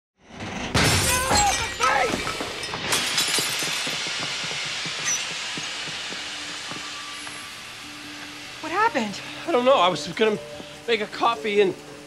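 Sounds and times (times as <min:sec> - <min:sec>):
crockery and glass shattering: 0:00.3 - 0:05.9
debris clattering: 0:00.3 - 0:07.5
sharp bangs: 0:00.5 - 0:07.6
hissing: 0:00.8 - 0:12.0.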